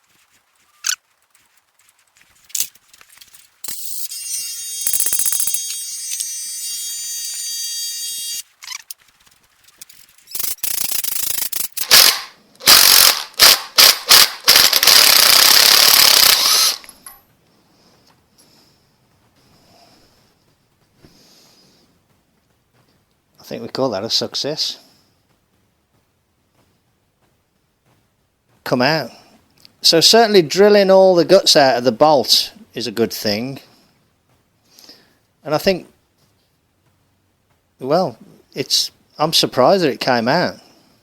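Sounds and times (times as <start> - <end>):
power tool whining: 3.7 - 8.4, 11.7 - 17.0
power tool loud short bursts: 10.4 - 16.9.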